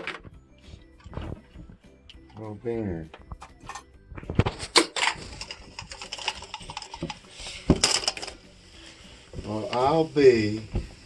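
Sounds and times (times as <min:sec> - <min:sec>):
plastic eggs rustling and clicking: 0:04.2 - 0:08.4.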